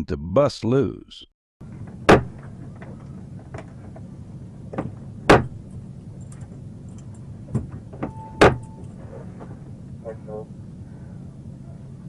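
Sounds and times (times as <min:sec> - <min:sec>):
vehicle engine hum: 0:01.6 - 0:12.0
knocks and thumps on car door: 0:02.1 - 0:02.4, 0:04.7 - 0:05.6.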